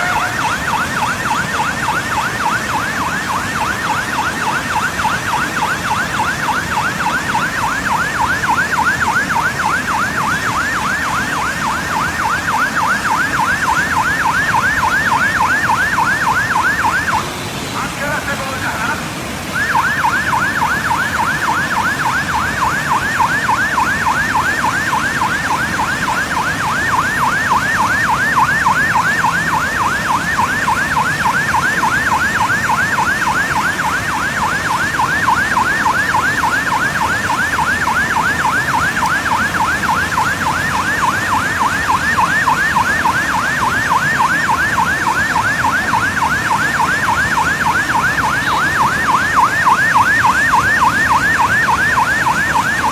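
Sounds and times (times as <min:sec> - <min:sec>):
background rush of noise: 0:00.0 - 0:52.9
electronic siren yelping: 0:00.0 - 0:52.9.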